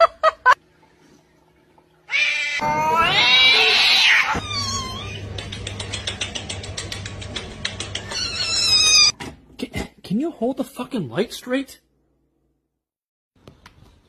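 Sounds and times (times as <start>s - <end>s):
cat yowling: 2.1s - 5.3s, 8.1s - 9.1s.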